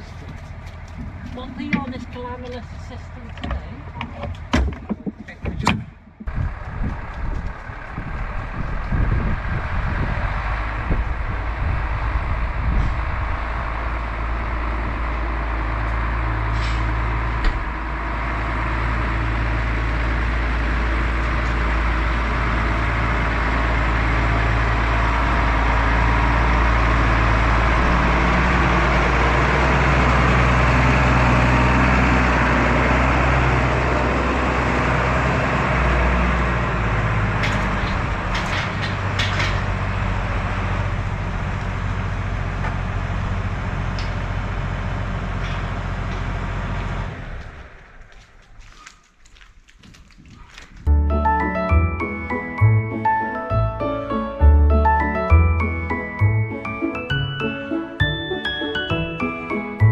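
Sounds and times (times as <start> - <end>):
knocks and clatter: 0.0 - 9.2, 36.7 - 41.8
vehicle engine running: 0.0 - 49.5.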